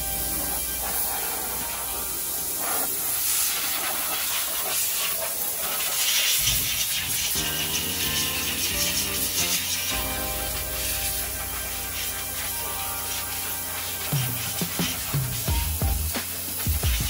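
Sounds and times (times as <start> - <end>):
high-pressure water spray hissing: 0.0 - 17.0.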